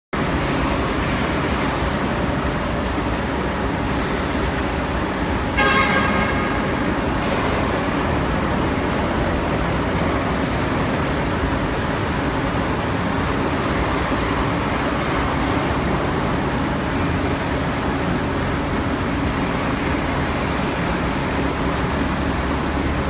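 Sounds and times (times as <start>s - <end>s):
industrial plant noise: 0.2s - 23.0s
horn sounding: 5.5s - 8.9s.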